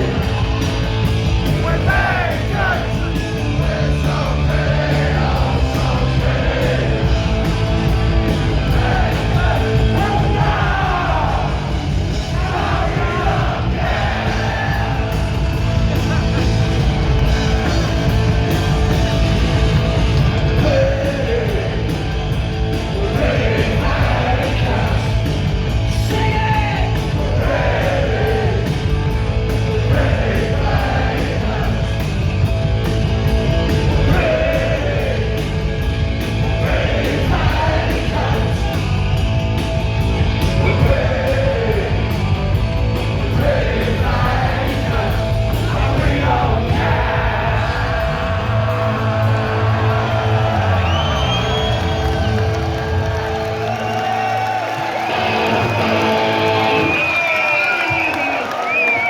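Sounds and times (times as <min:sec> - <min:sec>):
punk rock band playing live: 0:00.0 - 0:58.0
singer shouting: 0:26.0 - 0:27.0.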